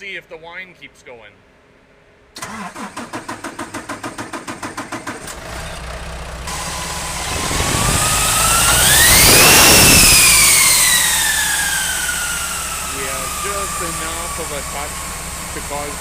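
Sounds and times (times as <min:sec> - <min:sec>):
diesel engine cranking and revving: 0:02.4 - 0:16.0
high turbo whine: 0:05.0 - 0:16.0.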